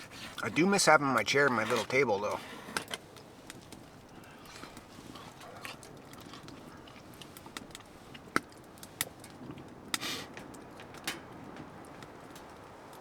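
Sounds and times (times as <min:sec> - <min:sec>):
person chewing food: 0:01.5 - 0:10.4.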